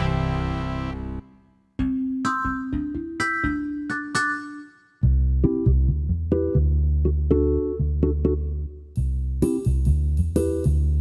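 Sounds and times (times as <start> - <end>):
deep sustained bass line: 0.0 - 1.4
electronic keyboard notes: 0.0 - 8.9.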